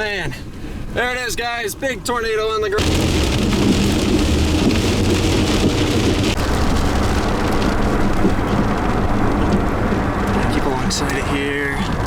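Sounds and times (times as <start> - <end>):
vehicle engine and road noise: 0.0 - 12.0
heavy rain on a vehicle: 2.8 - 12.0.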